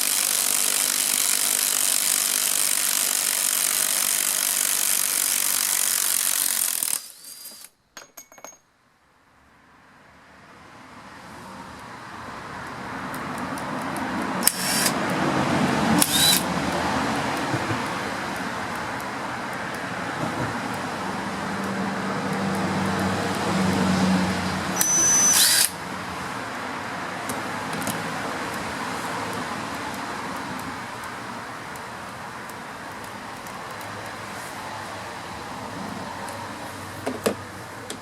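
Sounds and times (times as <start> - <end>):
steady noise with sharp bursts: 0.0 - 7.7.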